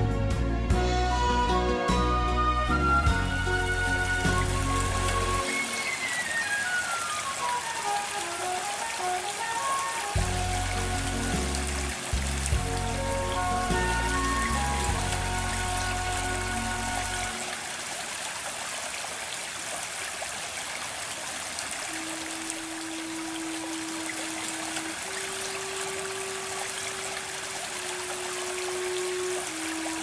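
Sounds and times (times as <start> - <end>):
background music: 0.0 - 17.6
stream water rushing: 1.4 - 30.0.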